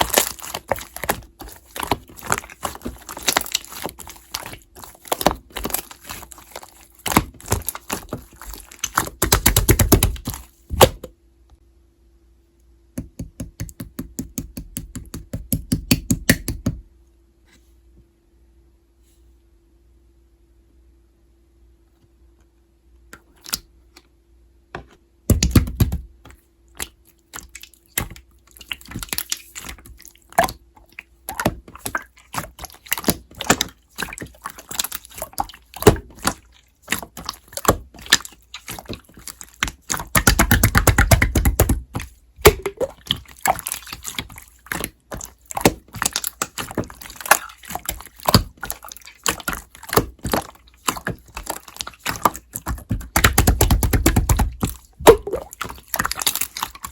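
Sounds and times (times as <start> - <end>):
slime squished by hand: 0.0 - 11.1, 26.7 - 56.9.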